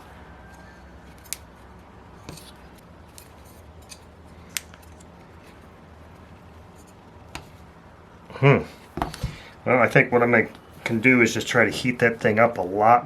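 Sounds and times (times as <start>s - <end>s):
faint low hum: 0.0s - 13.0s.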